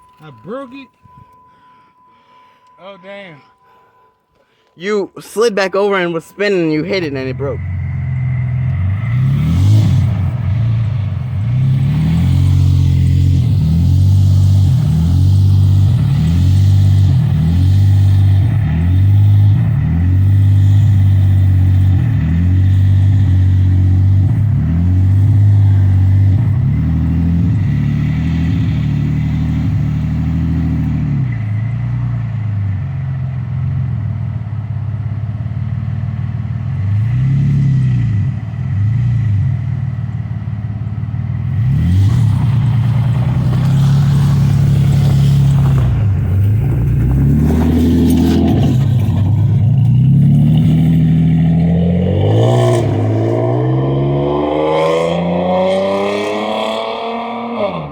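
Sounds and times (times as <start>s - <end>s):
car engine revving: 4.8s - 57.9s.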